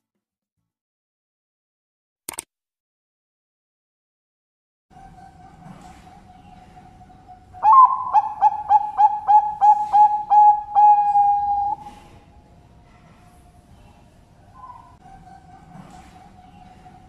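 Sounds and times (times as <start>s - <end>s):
dove cooing: 6.0s - 12.0s.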